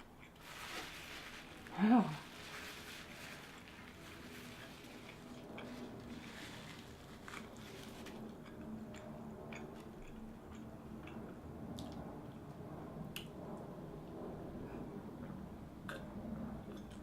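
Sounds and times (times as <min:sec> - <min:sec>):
faint low hum: 0:00.0 - 0:17.0
chewing sandwich: 0:03.6 - 0:12.6, 0:15.2 - 0:17.0.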